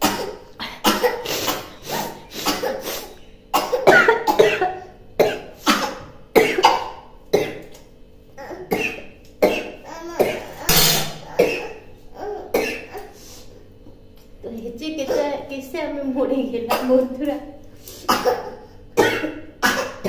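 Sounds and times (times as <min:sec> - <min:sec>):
woman coughing: 0:00.0 - 0:02.9, 0:03.5 - 0:07.7, 0:08.7 - 0:11.8, 0:12.5 - 0:13.0, 0:16.6 - 0:17.0, 0:18.1 - 0:20.0.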